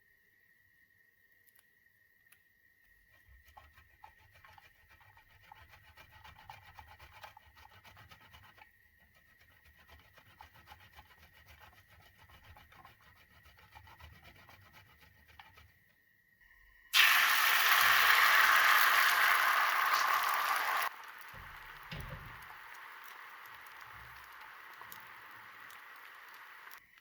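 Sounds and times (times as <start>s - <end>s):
hands rubbing and scraping food: 3.1s - 15.9s, 17.8s - 26.9s
loud sizzle in frying pan: 16.9s - 26.8s.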